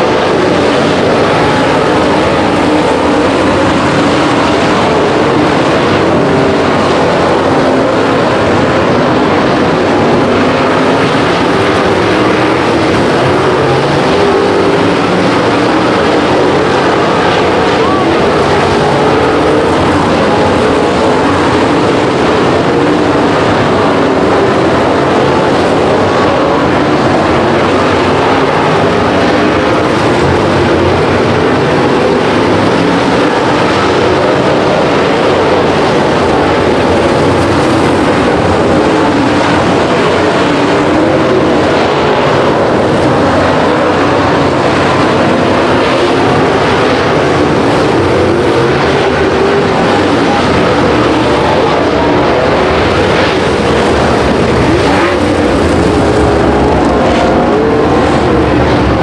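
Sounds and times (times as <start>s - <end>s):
race car engines running: 0.0s - 59.0s.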